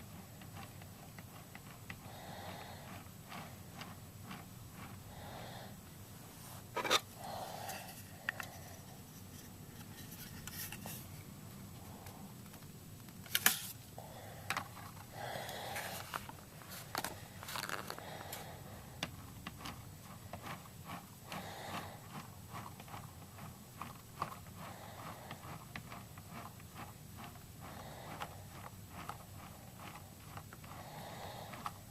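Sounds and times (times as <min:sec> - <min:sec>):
handling clicks and rustles: 0:14.5 - 0:18.4.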